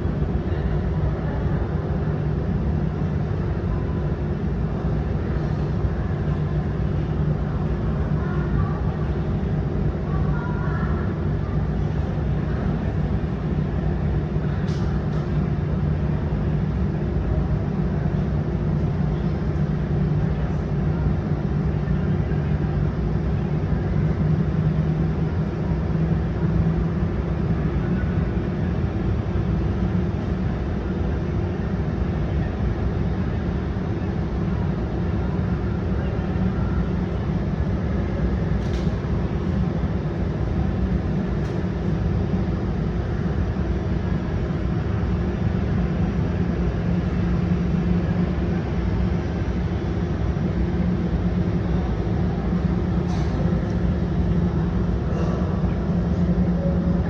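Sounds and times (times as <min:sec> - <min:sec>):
aircraft engine rumble: 0:00.0 - 0:57.0.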